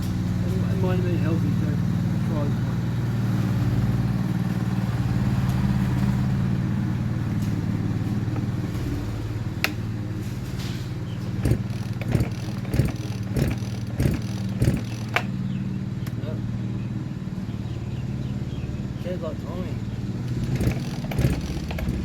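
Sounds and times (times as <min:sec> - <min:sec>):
low engine hum: 0:00.0 - 0:22.0
chainsaw pull-starter cranking: 0:11.2 - 0:15.4, 0:20.2 - 0:22.0.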